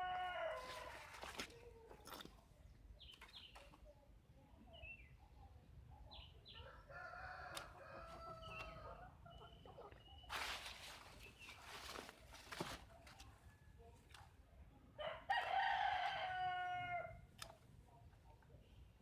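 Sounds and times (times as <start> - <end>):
rooster crowing faintly: 0.0 - 1.9
handling rustle: 0.5 - 2.4, 10.3 - 14.3.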